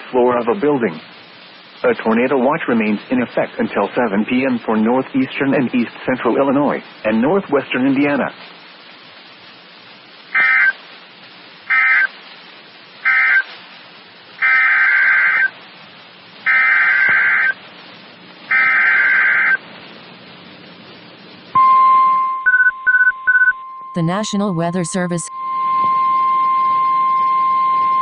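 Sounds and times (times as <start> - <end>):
radio hiss: 0.0 - 21.6, 24.0 - 25.3
short beeps: 21.6 - 28.0
high warning alert tone: 23.4 - 25.9.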